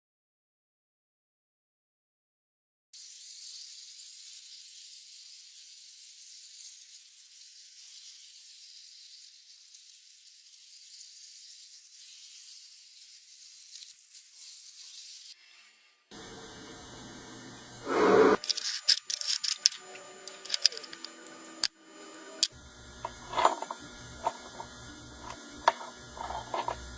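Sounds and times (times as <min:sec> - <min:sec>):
high hiss: 0:16.2 - 0:22.5.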